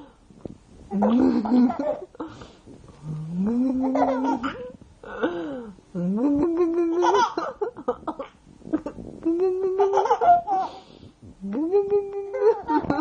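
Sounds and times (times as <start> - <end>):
infant laughing: 9.7 - 10.8.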